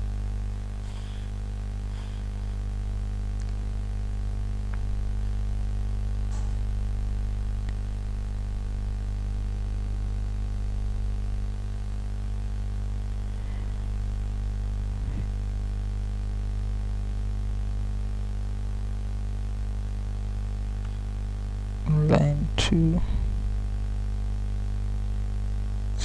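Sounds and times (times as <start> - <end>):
low electrical hum: 0.0 - 26.0
faint clicks: 3.3 - 3.6.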